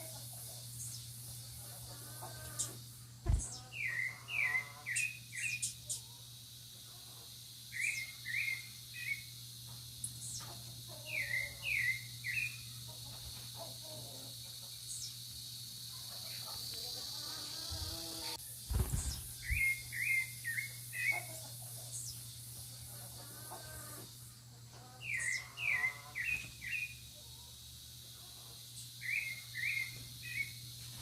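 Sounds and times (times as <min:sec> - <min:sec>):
brief thump: 0:03.2 - 0:03.6
songbird whistled notes: 0:07.8 - 0:09.3, 0:19.4 - 0:21.2, 0:29.0 - 0:30.6.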